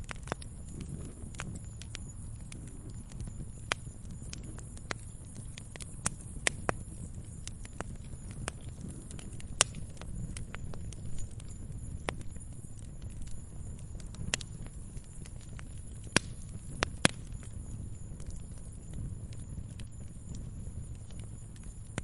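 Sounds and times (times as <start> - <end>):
fire crackling: 0.0 - 22.0
sharp pops and snaps: 14.1 - 17.6.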